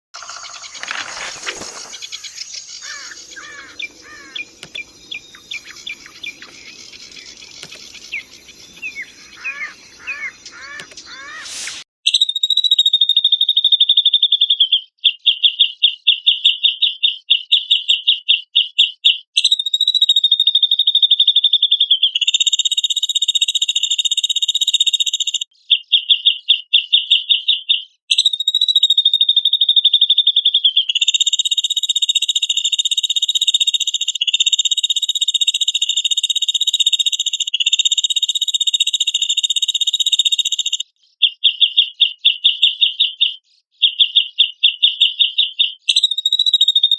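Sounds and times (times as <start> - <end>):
bird singing rapid trills: 0.2 - 46.9.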